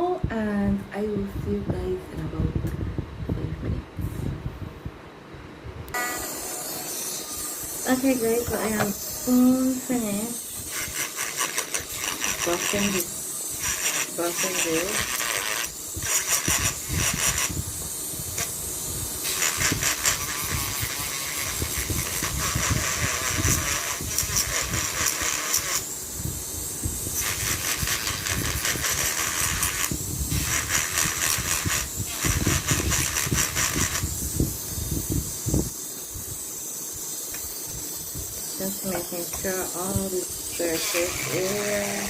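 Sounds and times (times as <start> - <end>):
sandpaper rasping on surface: 6.8 - 17.6, 19.3 - 25.8, 27.2 - 34.0, 39.4 - 42.0.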